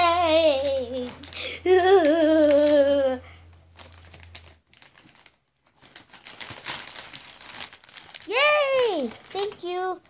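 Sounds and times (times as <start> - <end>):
person sing-song voice: 0.0 - 3.3
packaging crinkling: 0.2 - 3.0, 3.6 - 10.0.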